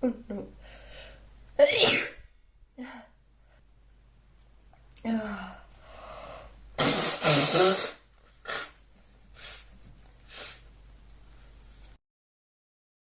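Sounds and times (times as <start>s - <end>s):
woman sneezing: 6.8s - 8.8s
short sharp breaths: 9.4s - 10.7s.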